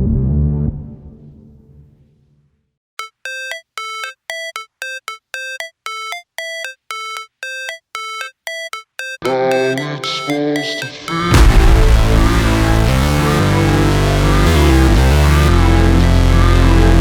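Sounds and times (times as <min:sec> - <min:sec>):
short electronic notes: 0:03.0 - 0:14.3
electronic music with heavy bass: 0:03.0 - 0:17.0.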